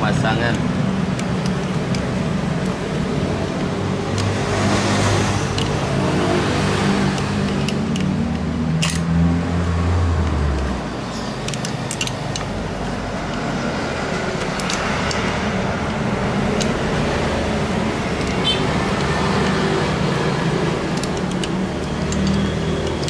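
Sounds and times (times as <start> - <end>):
steady mechanical background noise: 0.0 - 23.0
light plastic clicks: 11.4 - 13.4, 14.4 - 15.2, 20.8 - 23.0.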